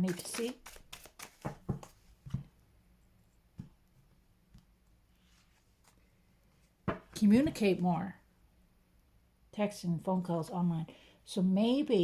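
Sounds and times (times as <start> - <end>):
cards tapping and flicking: 0.0 - 2.5.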